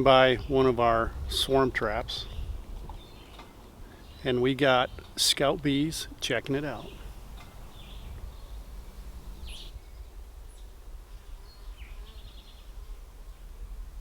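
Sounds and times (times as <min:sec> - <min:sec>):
low outdoor rumble: 0:00.0 - 0:11.1
bees buzzing faintly: 0:00.0 - 0:14.0
bird chirps: 0:02.2 - 0:05.3, 0:06.5 - 0:10.7.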